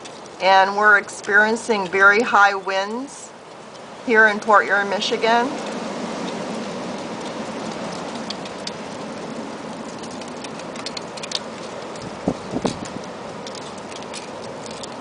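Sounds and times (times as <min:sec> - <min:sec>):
strong wind blowing: 0:04.0 - 0:13.3
dry leaves skittering on pavement: 0:04.8 - 0:15.0.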